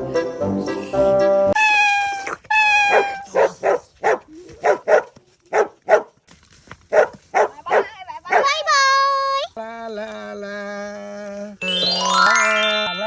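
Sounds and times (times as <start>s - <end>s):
dog yipping: 1.6s - 6.1s.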